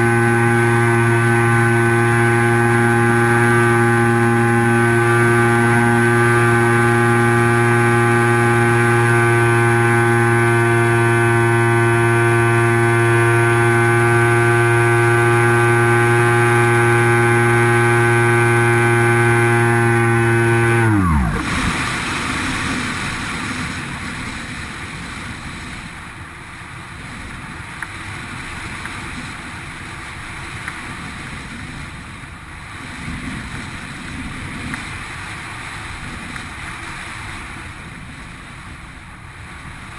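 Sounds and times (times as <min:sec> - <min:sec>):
propeller motor whine: 0:00.0 - 0:26.2.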